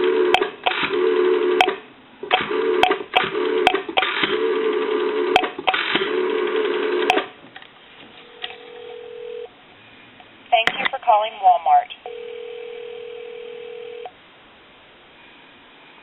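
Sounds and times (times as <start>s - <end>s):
rotary dial whirring back: 0.0s - 7.3s.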